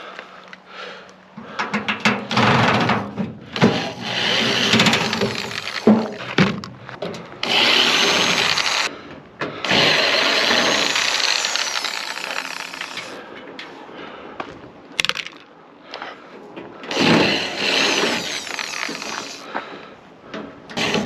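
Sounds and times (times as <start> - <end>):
power drill running: 3.6 - 6.2, 7.4 - 8.9, 9.6 - 13.2, 16.9 - 19.4, 20.8 - 21.0.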